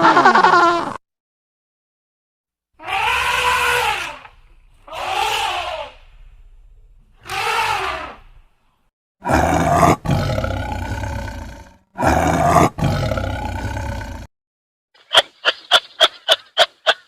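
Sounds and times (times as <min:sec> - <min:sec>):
large farm animal calling: 0:02.8 - 0:06.4, 0:07.2 - 0:08.4.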